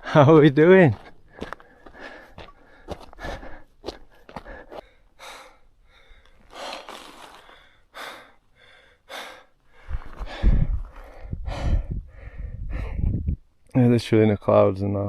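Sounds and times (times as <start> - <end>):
footstep clicks: 0.9 - 4.9
person breathing hard: 1.0 - 13.2.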